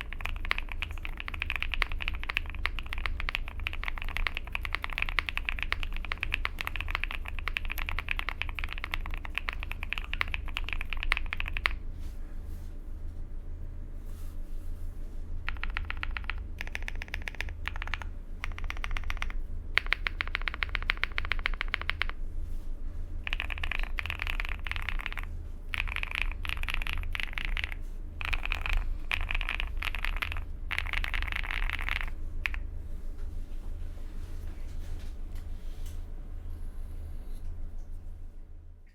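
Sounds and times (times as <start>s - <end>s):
mechanical keyboard typing: 0.0s - 11.8s, 15.4s - 22.2s, 23.2s - 32.6s
steady low hum: 0.0s - 38.9s.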